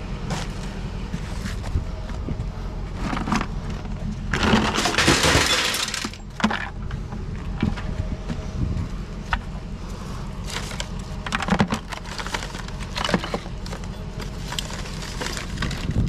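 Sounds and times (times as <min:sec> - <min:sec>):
low steady rumble: 0:00.0 - 0:16.0
scrap breaking and rattling: 0:02.9 - 0:06.8, 0:10.4 - 0:16.0.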